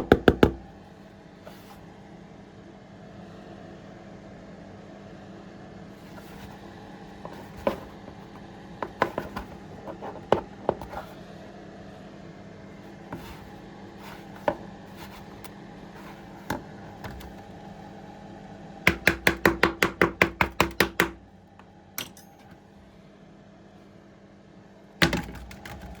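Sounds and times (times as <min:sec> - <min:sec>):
knocks on hard object: 0:00.0 - 0:00.6
steady hum: 0:00.0 - 0:26.0.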